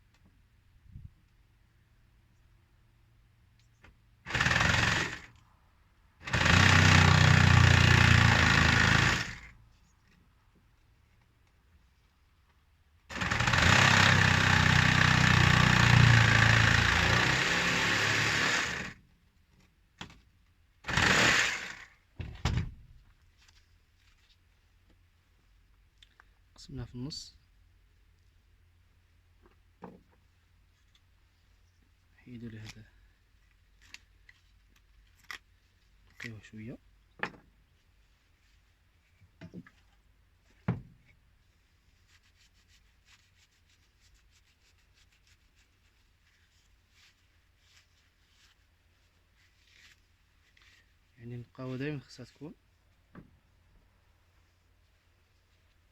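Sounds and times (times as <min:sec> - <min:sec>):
power tool cutting metal: 0:04.3 - 0:05.3, 0:06.2 - 0:09.5, 0:13.1 - 0:19.0, 0:20.9 - 0:21.9.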